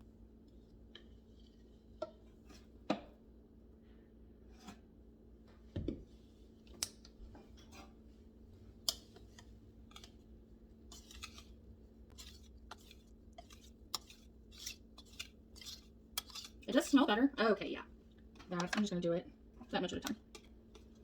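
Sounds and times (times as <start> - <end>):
utensils clicking on bowls: 10.9 - 17.0.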